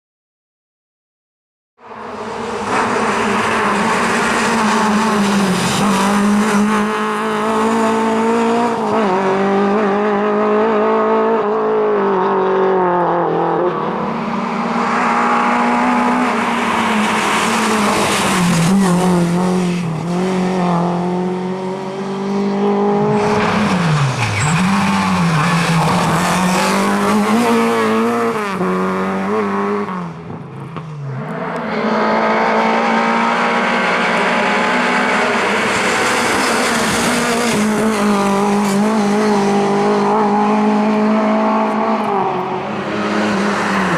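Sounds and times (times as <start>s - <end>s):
rally car engine revving: 1.9s - 43.9s
tyre squeal: 23.2s - 26.7s.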